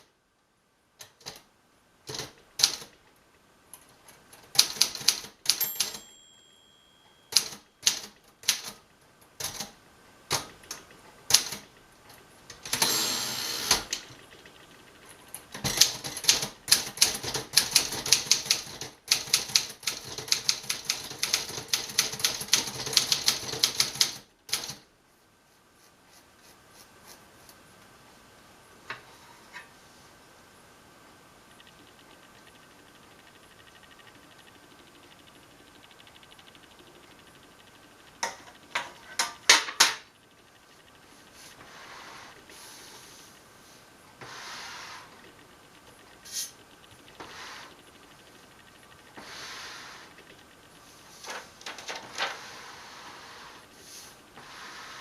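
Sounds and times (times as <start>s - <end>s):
typewriter keystrokes: 2.1s - 3.0s, 4.4s - 6.1s, 7.3s - 8.8s, 9.4s - 11.7s, 15.5s - 24.8s, 51.2s - 52.4s
typewriter margin bell ring: 5.5s - 8.1s, 12.7s - 13.7s
typewriter carriage return sweep: 12.6s - 14.1s, 51.2s - 52.6s.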